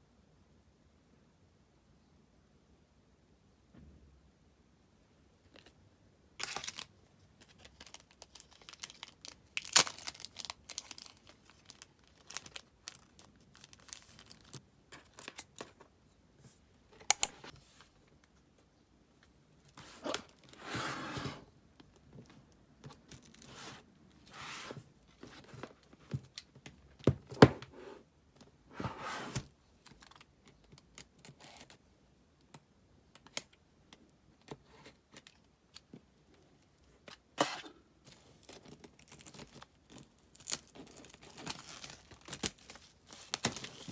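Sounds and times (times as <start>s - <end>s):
plastic wrapping torn and crinkled: 6.4s - 15.6s, 38.4s - 43.9s.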